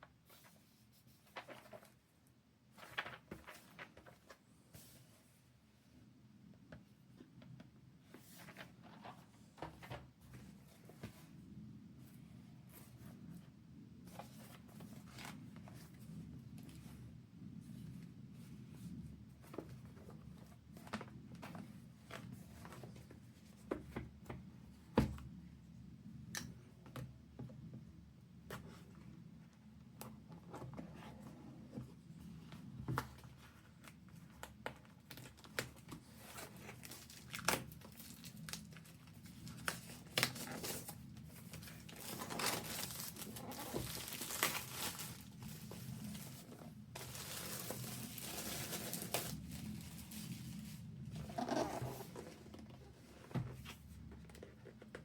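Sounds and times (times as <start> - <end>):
wrapping rustling and tearing: 35.1 - 51.8.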